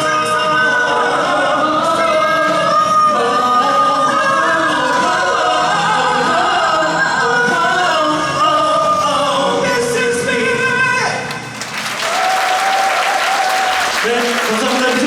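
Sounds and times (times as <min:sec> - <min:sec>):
group singing in harmony: 0:00.0 - 0:09.7.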